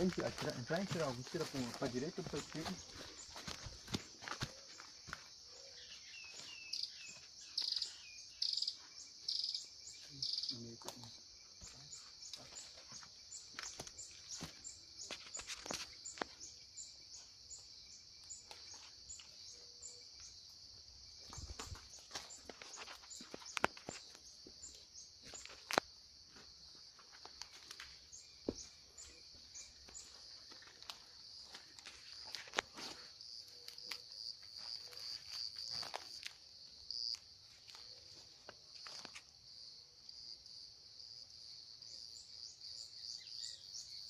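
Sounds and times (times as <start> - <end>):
footsteps snapping brush: 0.0 - 5.2, 21.3 - 24.1
insects buzzing: 0.0 - 44.0.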